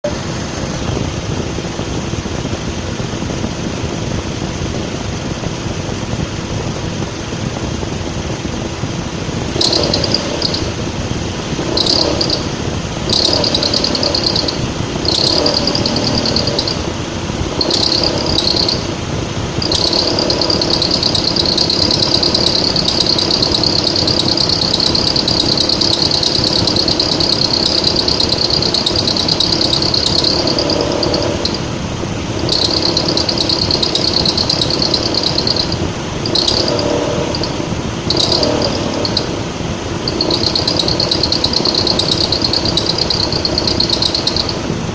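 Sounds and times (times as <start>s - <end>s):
car engine running: 9.2s - 44.9s
high drive belt whistle: 9.6s - 10.8s, 11.7s - 12.5s, 13.1s - 16.9s, 17.6s - 18.9s, 19.6s - 31.7s, 32.4s - 39.3s.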